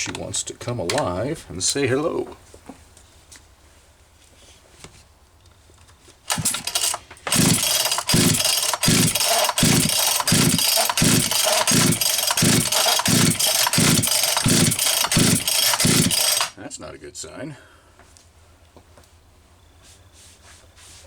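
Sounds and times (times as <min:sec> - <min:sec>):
chainsaw starting and running: 0:06.3 - 0:16.6.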